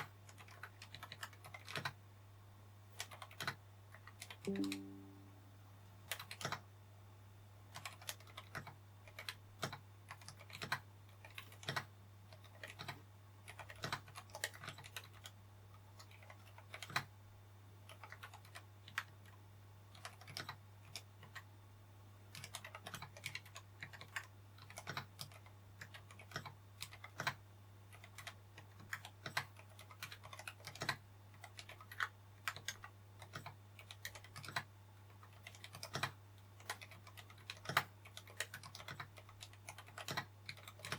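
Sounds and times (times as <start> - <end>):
quiet keyboard typing: 0.0 - 2.0, 2.9 - 5.4, 6.0 - 6.7, 7.7 - 17.2, 17.8 - 21.5, 22.2 - 40.9.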